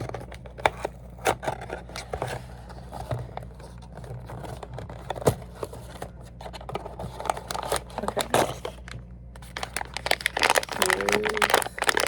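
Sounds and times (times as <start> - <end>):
packaging rustling and scraping: 0.0 - 12.0
steady low hum: 0.0 - 12.0.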